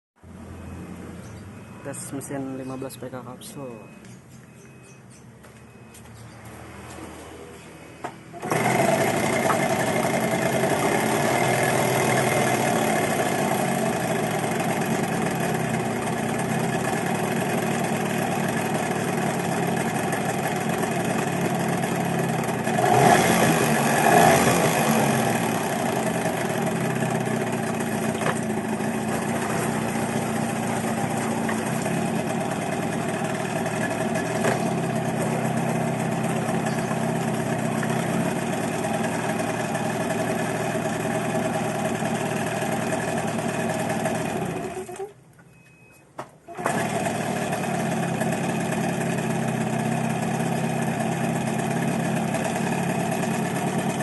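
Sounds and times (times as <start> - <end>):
outboard motor idling and revving: 8.4 - 45.2, 46.5 - 54.0.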